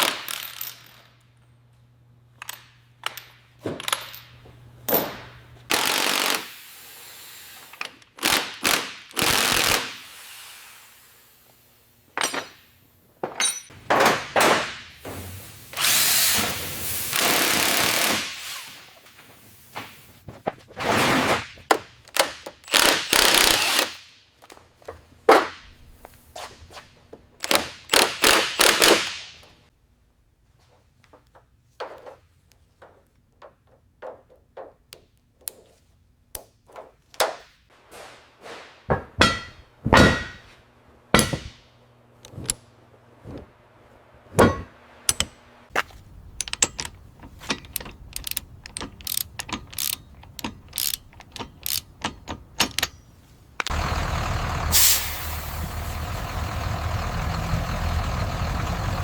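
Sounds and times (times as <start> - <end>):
metallic knocks: 39.0 - 40.5, 44.4 - 53.2
ratchet clicks: 46.1 - 53.7
hissing bursts: 54.7 - 55.9.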